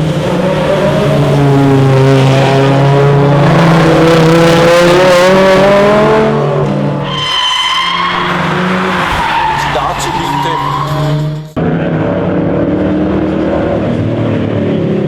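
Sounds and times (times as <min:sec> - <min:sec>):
racing car engine revving: 0:00.0 - 0:15.0
tyre squeal: 0:07.0 - 0:11.3.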